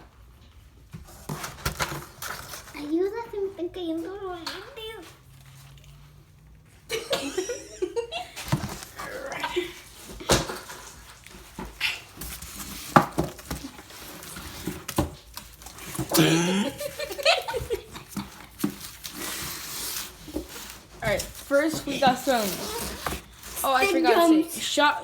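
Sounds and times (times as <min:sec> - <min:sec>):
person speaking: 0:16.1 - 0:17.2.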